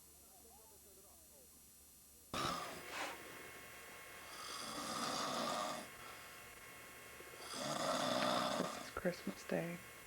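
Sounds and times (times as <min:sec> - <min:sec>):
man snoring: 0:02.3 - 0:02.9, 0:04.3 - 0:06.0, 0:07.4 - 0:08.9.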